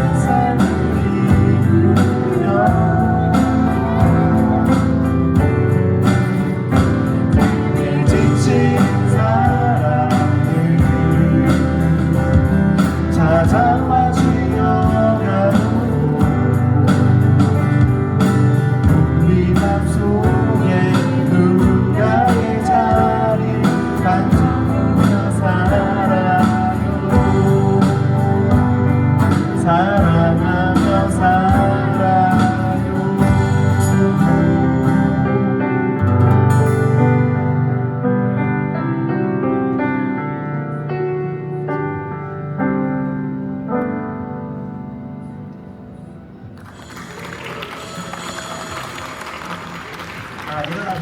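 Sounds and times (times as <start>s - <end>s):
person singing: 0.0s - 35.7s
guitar: 0.0s - 51.0s.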